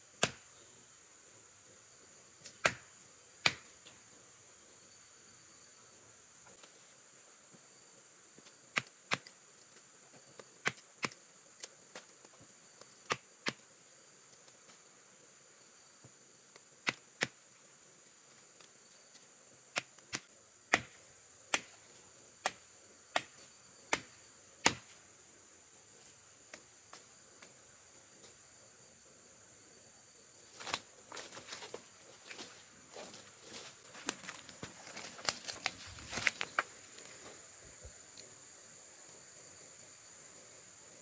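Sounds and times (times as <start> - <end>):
high insect drone: 0.0 - 41.0
blade chopping into bark: 2.5 - 3.7, 19.7 - 21.8, 23.2 - 25.0.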